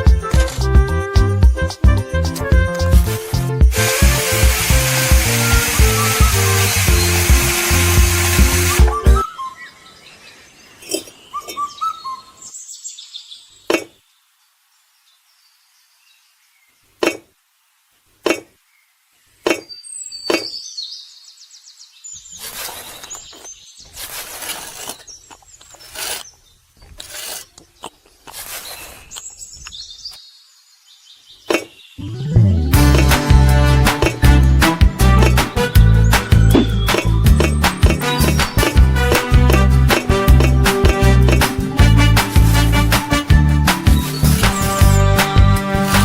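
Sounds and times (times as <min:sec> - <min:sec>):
birds chirping: 0:08.7 - 0:17.3, 0:18.2 - 0:32.7, 0:35.5 - 0:40.2, 0:43.2 - 0:45.2
rough scraping: 0:22.3 - 0:29.4.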